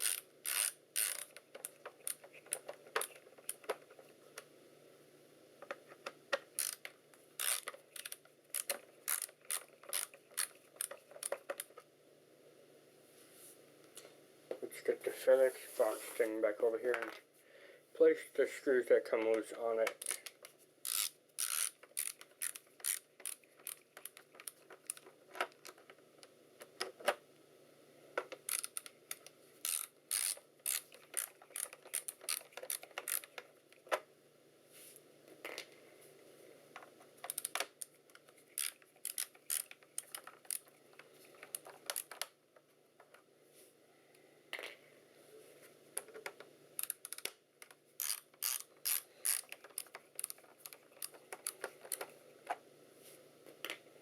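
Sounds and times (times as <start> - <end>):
screwdriver clicking on screws: 0.0 - 3.7, 6.6 - 11.7, 19.9 - 20.3, 20.9 - 25.0, 28.4 - 29.0, 29.7 - 33.4, 38.6 - 40.6, 41.4 - 42.3, 46.8 - 52.1.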